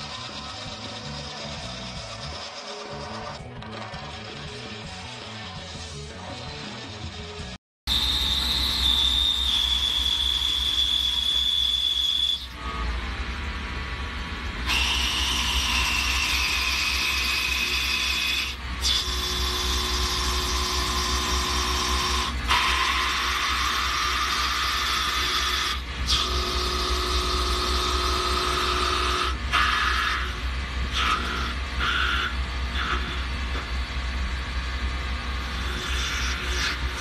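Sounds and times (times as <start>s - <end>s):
lathe cutting tool whine: 7.9s - 37.0s.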